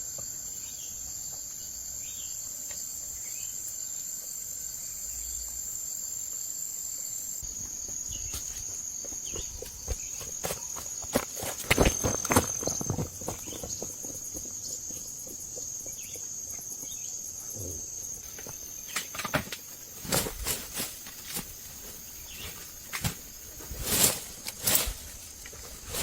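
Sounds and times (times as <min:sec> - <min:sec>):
insects chirring: 0:00.0 - 0:26.0.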